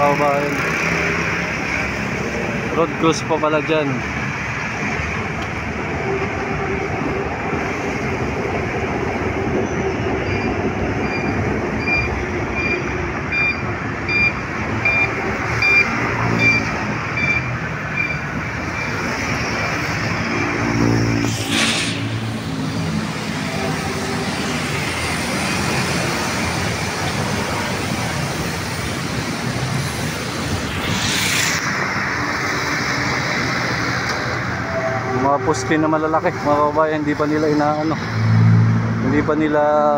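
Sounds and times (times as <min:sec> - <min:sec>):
street traffic: 0:00.0 - 0:39.9
electronic beeps: 0:10.3 - 0:19.0
hissing bursts: 0:15.1 - 0:34.9.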